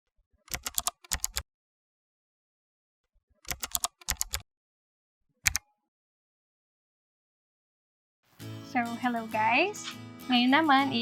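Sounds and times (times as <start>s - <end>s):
keyboard typing: 0.5s - 1.4s, 3.4s - 4.4s, 5.5s - 5.7s.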